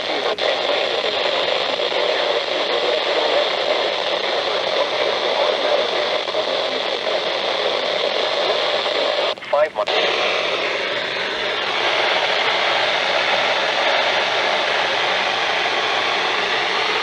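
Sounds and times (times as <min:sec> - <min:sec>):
radio static hiss: 0:00.0 - 0:17.0.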